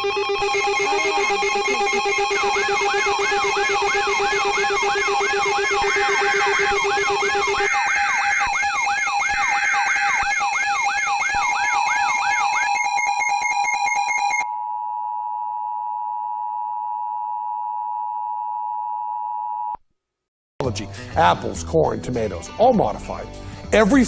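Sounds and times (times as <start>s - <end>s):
rapid choppy beeps: 0.0s - 14.4s
two-tone attention signal: 0.0s - 19.7s
electronic alarm tones: 0.0s - 19.8s.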